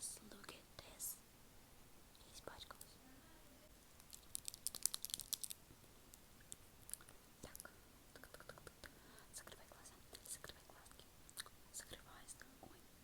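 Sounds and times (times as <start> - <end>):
wet mouth clicks and lip smacks: 8.2 - 8.9.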